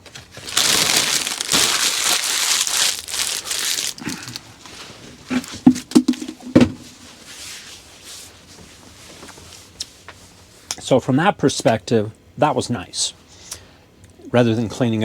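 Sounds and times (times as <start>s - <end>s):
rustling and wiping: 6.4s - 10.5s.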